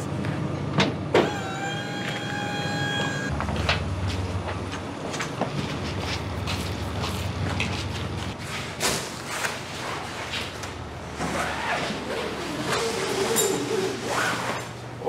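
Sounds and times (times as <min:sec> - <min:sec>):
small electric motor whining: 0:01.2 - 0:03.4.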